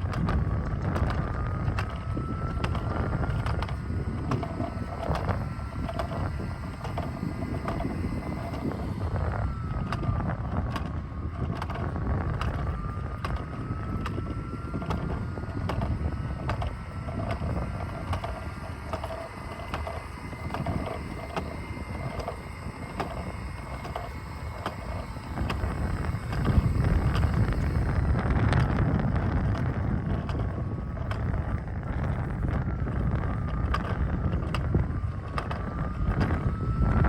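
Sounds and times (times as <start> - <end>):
faint high whine: 0.0 - 37.0
wind buffeting microphone: 0.0 - 37.0.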